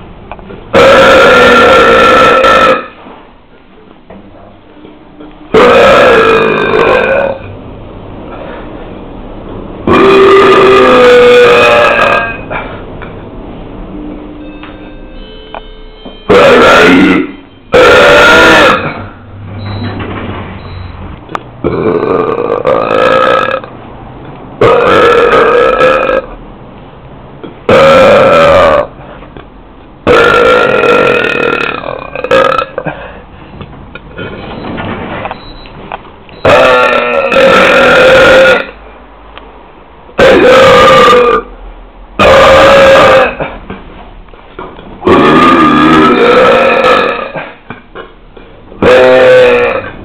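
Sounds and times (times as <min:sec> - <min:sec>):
loud belches: 0:00.7 - 0:03.0, 0:05.5 - 0:07.5, 0:09.8 - 0:12.8, 0:16.3 - 0:19.2, 0:21.6 - 0:23.7, 0:24.6 - 0:26.4, 0:27.6 - 0:28.9, 0:30.0 - 0:33.2, 0:36.4 - 0:38.8, 0:40.2 - 0:41.5, 0:42.2 - 0:43.8, 0:45.0 - 0:48.1, 0:48.8 - 0:50.0.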